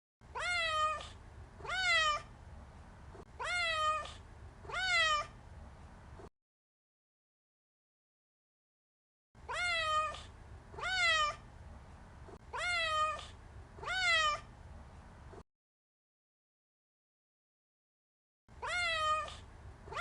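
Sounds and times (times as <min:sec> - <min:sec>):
cat meowing: 0:00.3 - 0:02.3, 0:03.4 - 0:05.4, 0:09.4 - 0:11.4, 0:12.5 - 0:14.5, 0:18.6 - 0:20.0.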